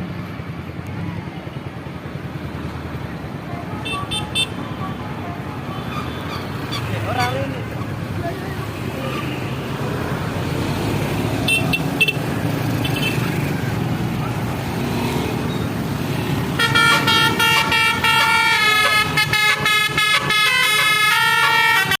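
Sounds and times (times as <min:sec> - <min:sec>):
engine and traffic rumble: 0:00.0 - 0:22.0
multi-note bus horn melody: 0:03.7 - 0:06.5, 0:16.4 - 0:22.0.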